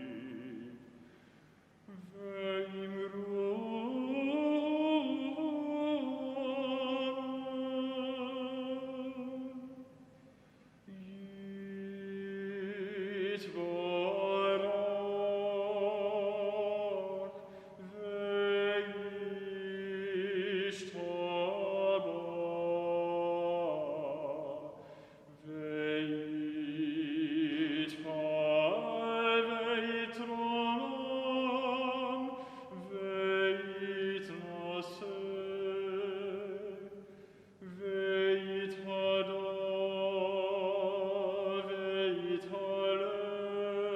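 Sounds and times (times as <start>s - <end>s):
voices singing slowly with vibrato: 0.0s - 1.1s, 1.8s - 43.9s.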